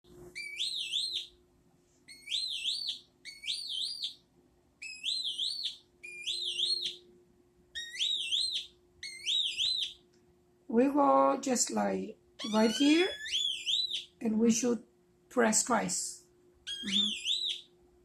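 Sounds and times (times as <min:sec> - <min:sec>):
electronic whistle tones: 0:16.7 - 0:17.7.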